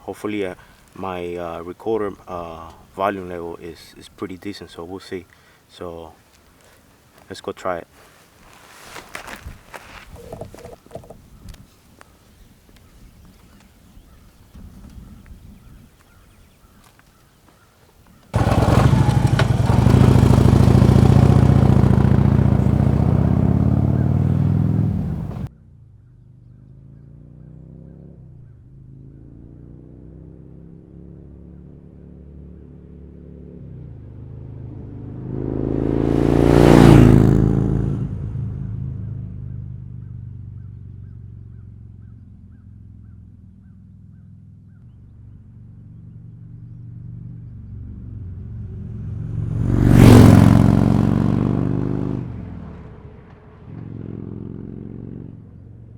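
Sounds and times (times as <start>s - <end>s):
motorcycle engine accelerating: 18.2s - 25.5s, 26.4s - 55.9s.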